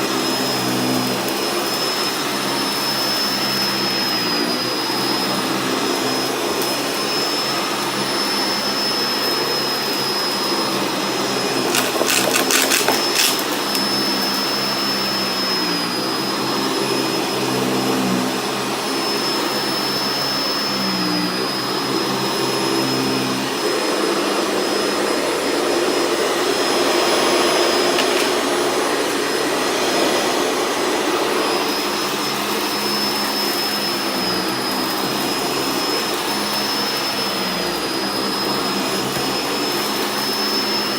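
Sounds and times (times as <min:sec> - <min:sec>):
vacuum cleaner whine: 0:00.0 - 0:40.9
salt grains crackling in vacuum: 0:11.7 - 0:13.9.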